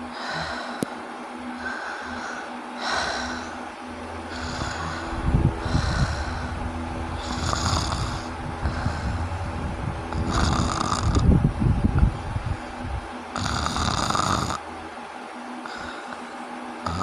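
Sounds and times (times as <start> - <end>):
person snoring heavily: 1.6 - 3.6, 4.3 - 9.2, 10.1 - 11.2, 13.4 - 14.6.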